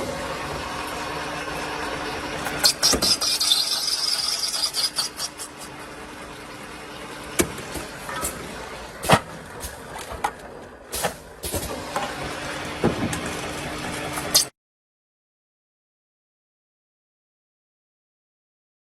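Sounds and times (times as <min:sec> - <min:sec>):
pipe cutting machine humming: 0:00.0 - 0:14.5.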